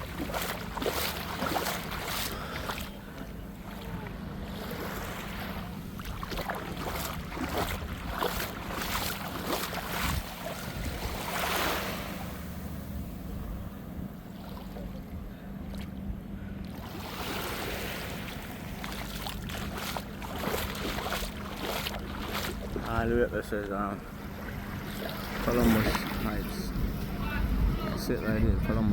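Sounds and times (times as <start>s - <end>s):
waves washing onto beach: 0.0s - 13.6s, 16.6s - 28.0s
steady low hum: 0.0s - 28.9s
wind on microphone: 5.6s - 14.3s, 24.6s - 28.9s.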